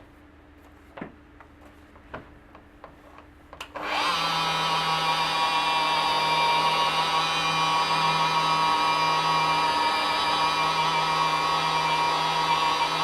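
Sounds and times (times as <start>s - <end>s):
electric polisher spinning: 3.7s - 13.0s.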